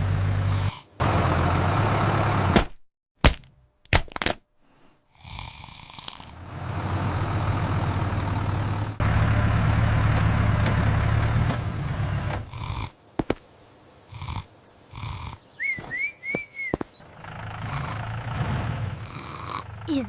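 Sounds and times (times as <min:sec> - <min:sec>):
person snoring: 0:05.1 - 0:06.3, 0:17.6 - 0:18.2, 0:19.0 - 0:19.7.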